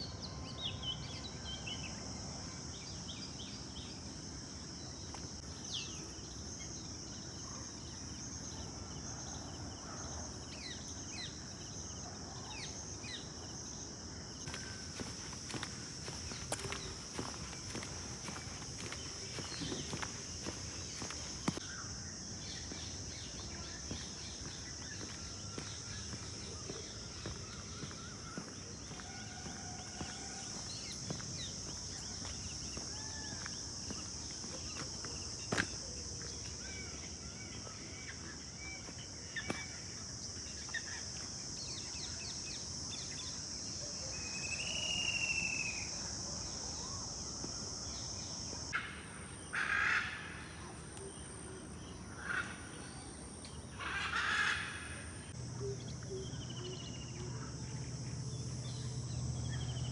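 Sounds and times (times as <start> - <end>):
birds calling: 14.5 - 39.8.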